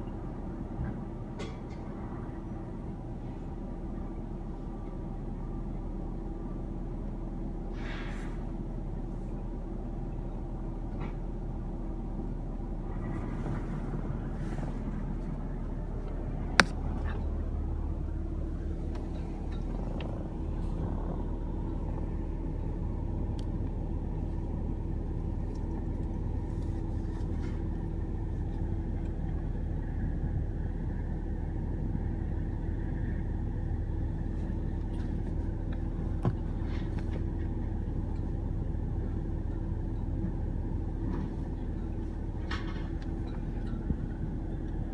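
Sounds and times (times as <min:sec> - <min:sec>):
truck engine rumbling: 0:12.7 - 0:29.0
sharp click or knock: 0:16.6 - 0:16.8.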